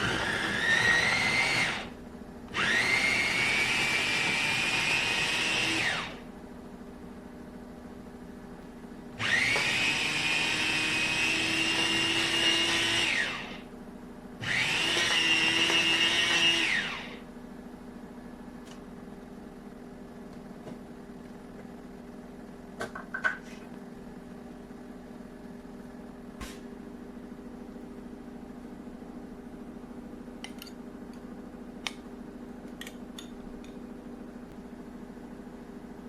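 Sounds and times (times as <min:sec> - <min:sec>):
food processor motor whining: 0:00.0 - 0:06.3, 0:09.2 - 0:13.7, 0:14.4 - 0:17.3.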